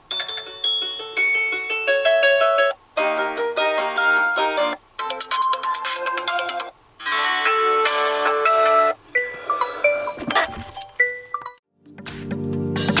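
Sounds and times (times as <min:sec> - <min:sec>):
phone ringtone melody: 0:00.1 - 0:02.8, 0:05.0 - 0:11.6.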